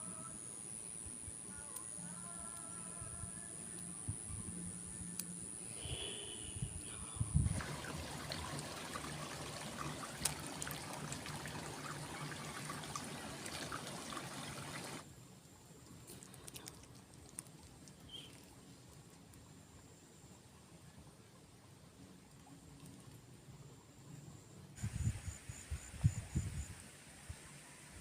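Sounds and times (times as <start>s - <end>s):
small ticks: 5.0s - 5.4s, 15.8s - 19.5s
water trickling and splashing: 7.5s - 15.1s.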